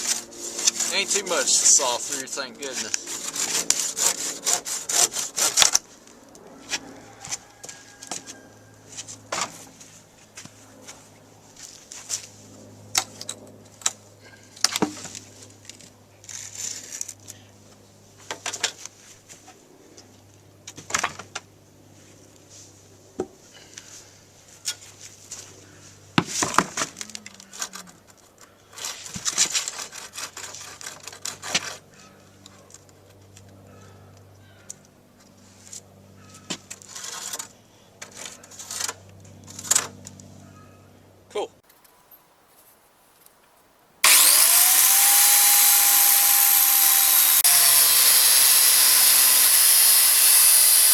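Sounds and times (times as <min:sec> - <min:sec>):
hand saw rasping strokes: 0:00.0 - 0:05.7, 0:44.0 - 0:50.9.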